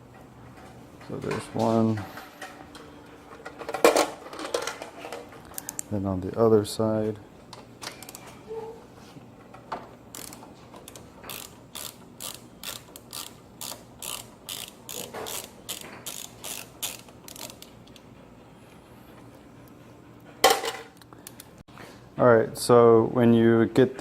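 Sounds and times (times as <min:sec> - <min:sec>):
ratchet wrench clicking: 0:10.1 - 0:18.0.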